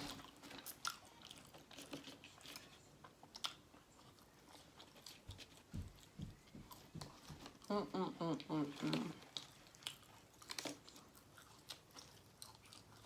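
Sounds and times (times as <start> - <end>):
chewing french fries: 0.0 - 13.0.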